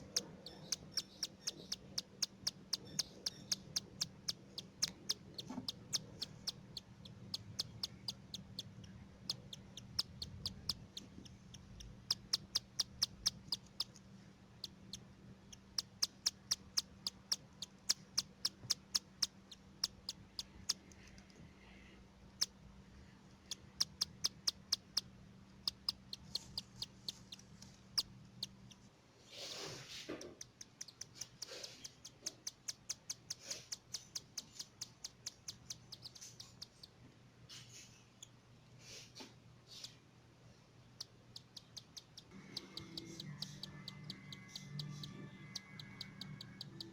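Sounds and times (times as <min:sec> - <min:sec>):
chicks cheeping: 0:00.0 - 0:14.0, 0:23.5 - 0:25.0, 0:25.6 - 0:28.8, 0:30.6 - 0:36.9, 0:41.0 - 0:46.9.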